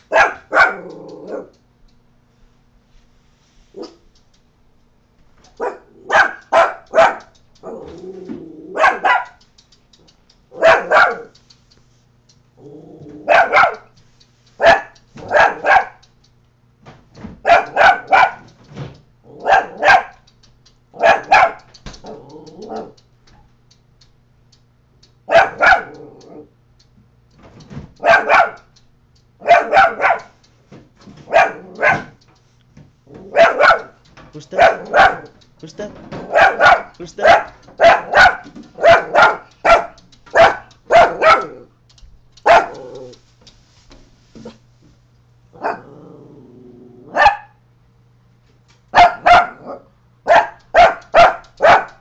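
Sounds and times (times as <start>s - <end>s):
small dog barking: 0.0s - 1.6s, 3.7s - 4.1s, 5.5s - 9.4s, 10.5s - 11.4s, 13.1s - 14.0s, 14.6s - 16.0s, 17.4s - 18.6s, 19.3s - 20.3s, 21.0s - 23.0s, 25.2s - 26.5s, 28.0s - 28.7s, 29.4s - 30.4s, 31.2s - 32.2s, 33.2s - 35.4s, 36.2s - 41.7s, 42.4s - 43.2s, 45.5s - 46.2s, 47.0s - 47.6s, 48.9s - 52.0s
dog growling: 0.6s - 1.5s, 7.6s - 9.0s, 12.6s - 13.5s, 19.2s - 19.9s, 22.0s - 23.0s, 25.4s - 26.5s, 31.4s - 31.9s, 34.6s - 35.3s, 42.6s - 43.2s, 45.5s - 47.2s.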